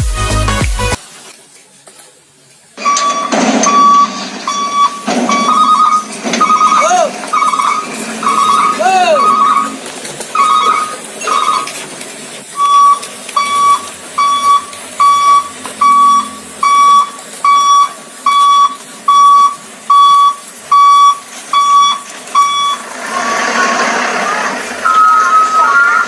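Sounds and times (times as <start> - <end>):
toy electronic beeper beeping: 2.8 - 9.8, 10.4 - 11.8, 12.6 - 22.8, 24.8 - 26.0.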